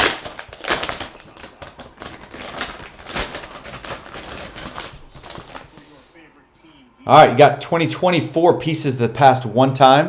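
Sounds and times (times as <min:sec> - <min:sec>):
packaging crinkling: 0:00.0 - 0:06.0.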